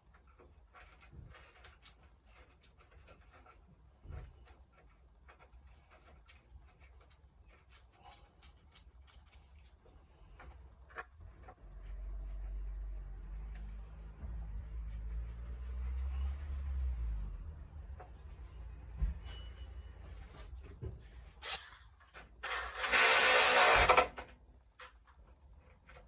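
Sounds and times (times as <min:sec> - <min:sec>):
scratchy rubbing on metal: 0:22.4 - 0:24.1.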